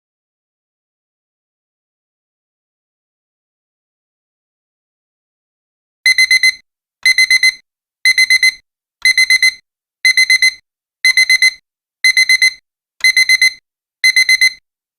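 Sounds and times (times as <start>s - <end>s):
alarm clock beeping: 6.1s - 14.6s.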